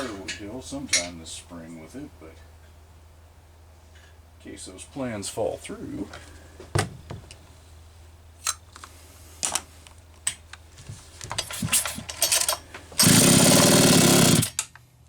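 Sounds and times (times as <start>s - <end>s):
chainsaw handling clicks: 11.8s - 14.8s
loud rattling burst: 13.0s - 14.5s.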